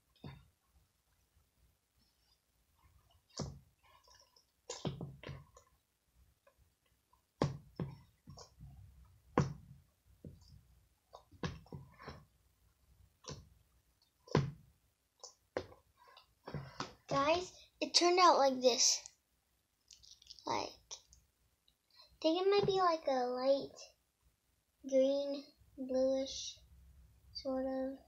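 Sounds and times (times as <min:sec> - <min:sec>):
sharp clicks and pops: 0:19.8 - 0:21.8.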